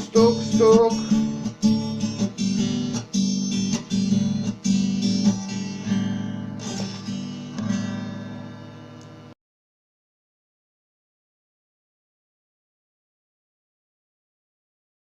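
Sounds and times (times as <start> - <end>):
strummed guitar chords: 0.0 - 9.4.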